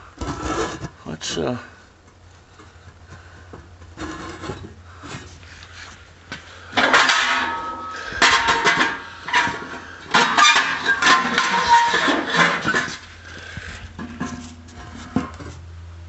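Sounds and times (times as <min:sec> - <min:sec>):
metal clanking and rattling: 0:06.7 - 0:15.6.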